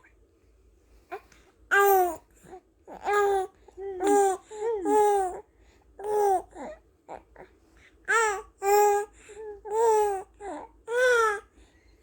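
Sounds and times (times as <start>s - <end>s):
baby cooing: 1.1s - 5.4s, 6.0s - 7.5s, 8.1s - 11.5s.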